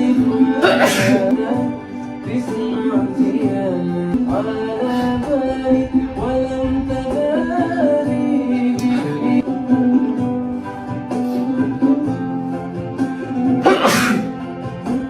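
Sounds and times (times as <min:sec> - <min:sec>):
person singing: 0:00.0 - 0:12.3, 0:13.2 - 0:14.4.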